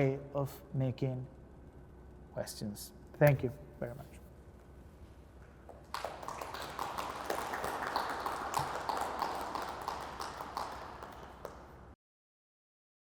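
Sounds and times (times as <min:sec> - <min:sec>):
audience applauding: 0:05.7 - 0:12.0.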